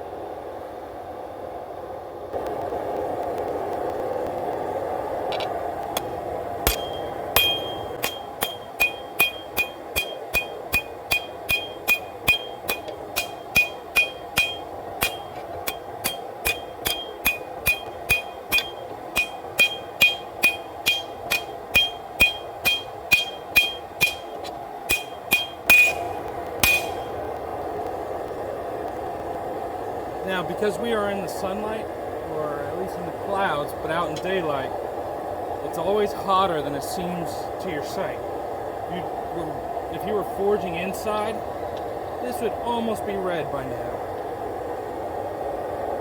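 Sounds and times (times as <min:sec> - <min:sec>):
steady rushing hum: 0:00.0 - 0:46.0
hammer striking steel on anvil: 0:06.7 - 0:27.2.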